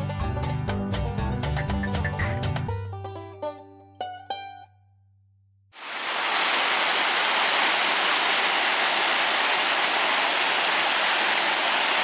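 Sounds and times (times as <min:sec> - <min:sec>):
steady rushing noise: 0:05.8 - 0:12.0.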